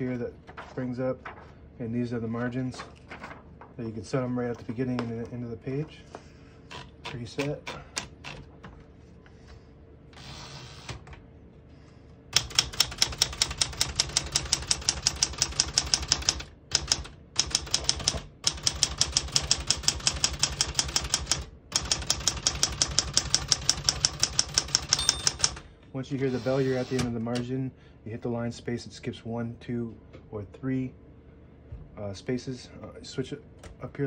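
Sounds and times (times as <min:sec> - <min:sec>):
typewriter key strikes: 0:12.4 - 0:25.6.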